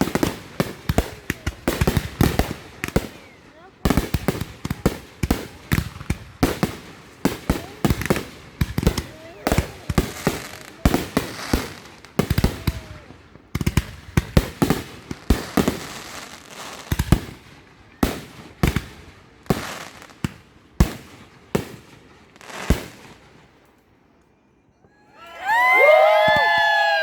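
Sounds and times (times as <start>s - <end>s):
fireworks booming: 0.0s - 17.4s.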